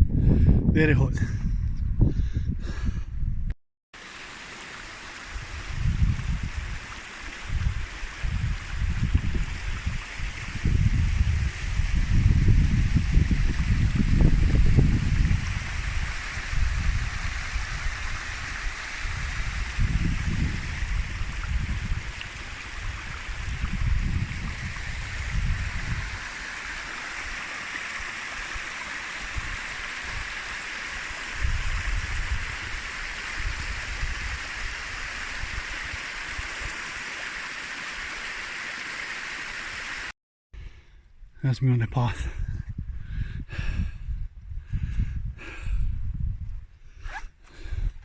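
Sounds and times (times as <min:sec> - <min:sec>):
stream rushing over rocks: 0:04.0 - 0:12.0, 0:13.2 - 0:40.1.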